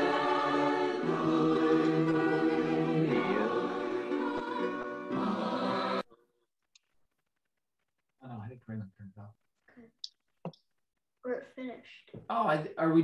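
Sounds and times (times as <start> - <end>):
choir singing held chords: 0.0 - 6.1.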